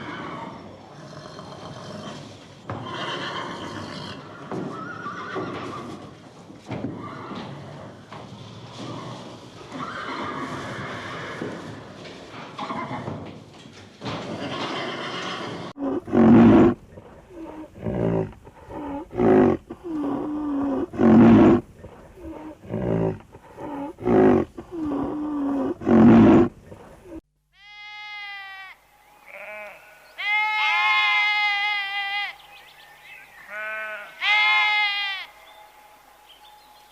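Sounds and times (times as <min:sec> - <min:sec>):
sheep bleating: 0:27.6 - 0:32.4, 0:33.5 - 0:35.4
camel calling: 0:33.5 - 0:35.4.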